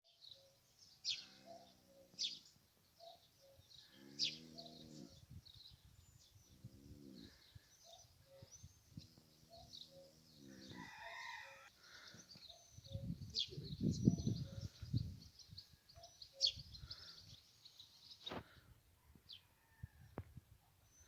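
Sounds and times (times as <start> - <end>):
small birds chirping: 0.0 - 18.7.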